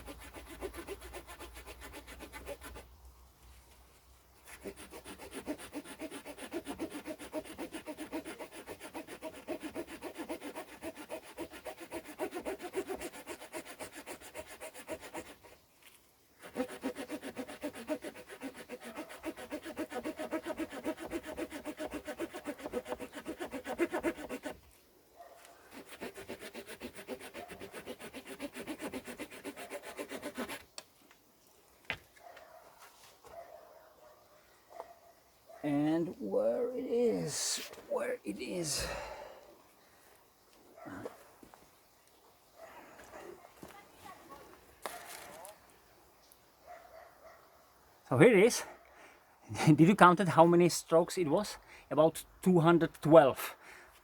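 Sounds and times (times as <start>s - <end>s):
saw cutting through branch: 0.0s - 2.9s, 4.5s - 15.6s, 16.4s - 24.6s, 25.7s - 30.7s.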